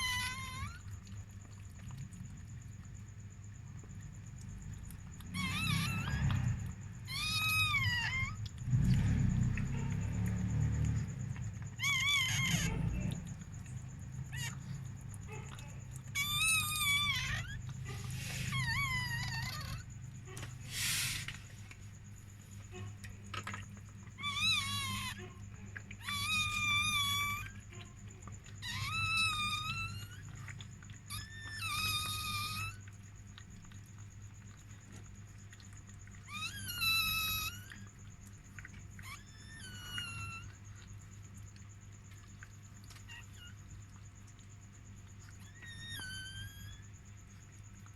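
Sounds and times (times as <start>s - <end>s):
puppy crying in high squeals: 0.0s - 0.9s, 5.4s - 8.4s, 11.7s - 13.3s, 14.2s - 19.9s, 24.2s - 27.9s, 28.6s - 30.5s, 31.1s - 33.0s, 36.2s - 37.9s, 39.0s - 40.6s, 45.4s - 46.9s.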